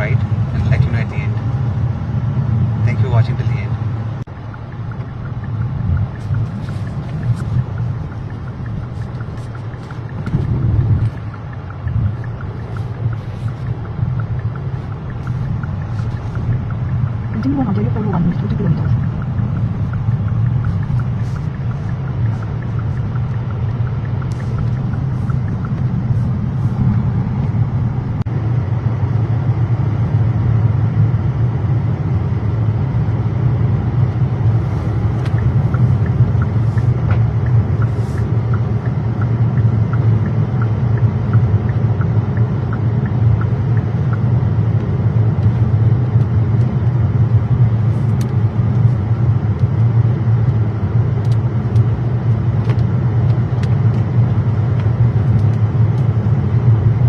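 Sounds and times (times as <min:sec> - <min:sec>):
car tyres and engine rumble: 0:00.0 - 0:57.0
faint regular ticking: 0:04.2 - 0:28.2, 0:34.6 - 0:45.6.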